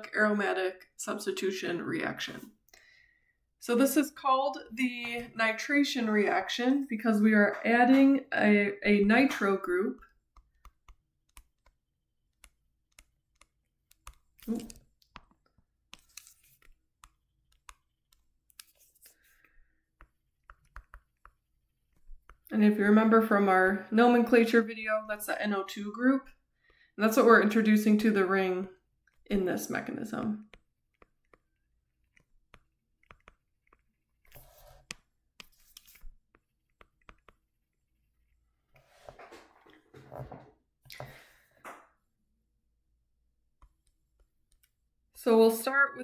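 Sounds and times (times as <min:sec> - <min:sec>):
scratchy writing sounds: 0:10.0 - 0:22.5, 0:30.4 - 0:39.2
faint brushing: 0:12.4 - 0:22.4, 0:30.5 - 0:39.4.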